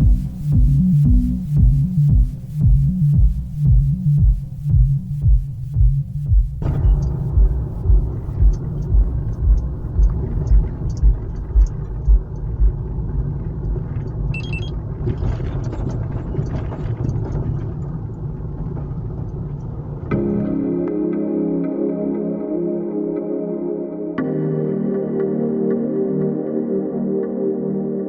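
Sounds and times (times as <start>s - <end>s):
regular low thump: 0.0s - 14.1s
car engine and road noise: 6.8s - 20.1s.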